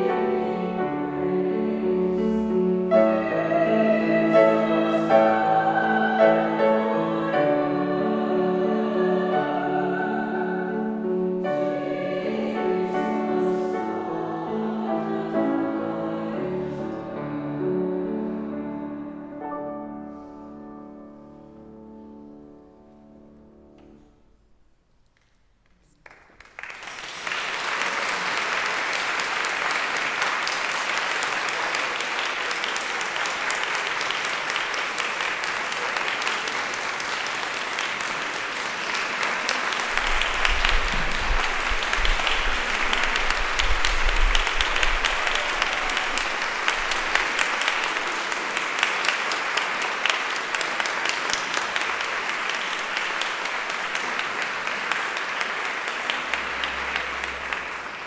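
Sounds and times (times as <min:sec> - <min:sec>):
piano accompaniment: 0:00.0 - 0:24.5, 0:33.1 - 0:58.0
audience applause: 0:26.0 - 0:58.0.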